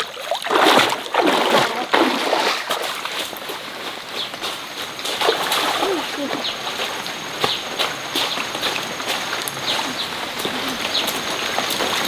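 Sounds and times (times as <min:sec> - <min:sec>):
water splashing in a stream: 0:00.0 - 0:12.0.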